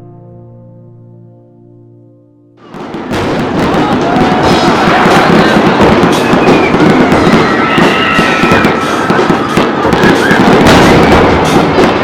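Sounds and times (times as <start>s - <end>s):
fireworks bangs and crackling: 2.6s - 12.0s
fireworks whistling: 2.6s - 12.0s.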